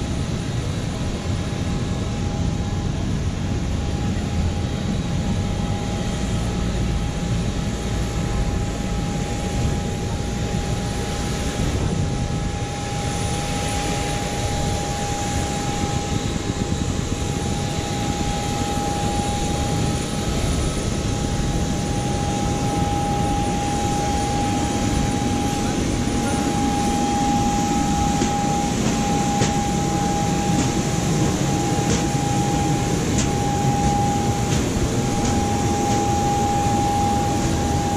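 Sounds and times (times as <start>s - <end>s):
constant high whine: 0.0s - 37.9s.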